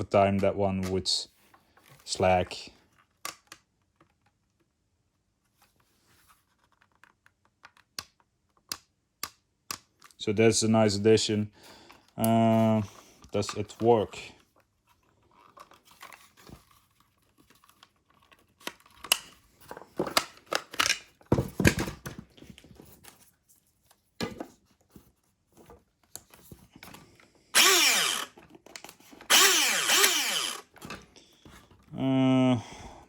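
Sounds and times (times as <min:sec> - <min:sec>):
electric gun motor whirring: 0:27.6 - 0:28.4, 0:29.2 - 0:30.8.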